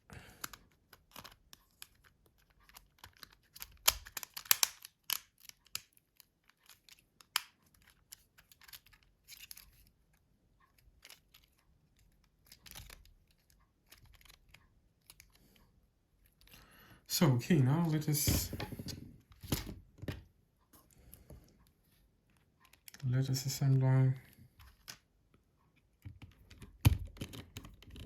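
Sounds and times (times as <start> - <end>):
phone parts clicking and scraping: 0.4 - 10.0, 10.7 - 15.4, 25.8 - 28.0.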